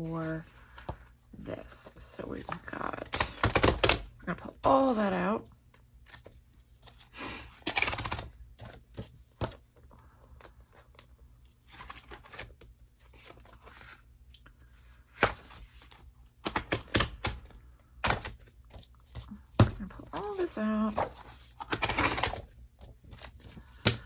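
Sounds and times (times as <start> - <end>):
pages snapping off plastic discs: 16.4 - 18.9
paper rustling: 18.3 - 24.0.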